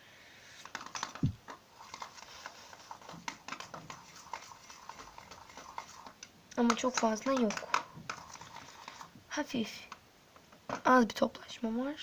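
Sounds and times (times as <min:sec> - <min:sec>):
light clicks and taps: 0:05.4 - 0:09.0.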